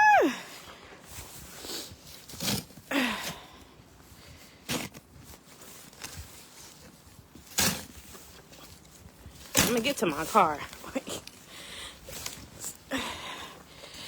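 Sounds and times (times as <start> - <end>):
snow shovel scraping snow: 1.1 - 2.9, 4.4 - 11.3.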